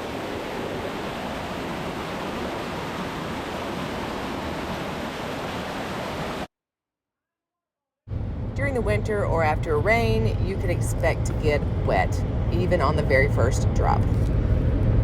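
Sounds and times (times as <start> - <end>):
waterfall rushing: 0.0 - 6.5.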